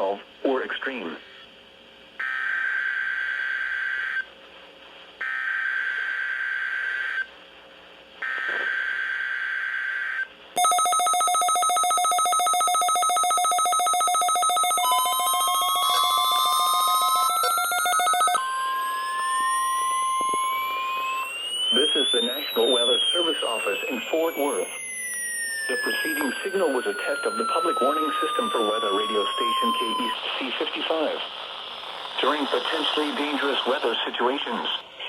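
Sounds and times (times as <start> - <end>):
rapidly pulsing alarm beep: 10.6 - 30.2
steady warning alarm tone: 10.6 - 30.2
screeching digital data bursts: 13.8 - 31.2
rising siren-like tones: 14.8 - 30.2.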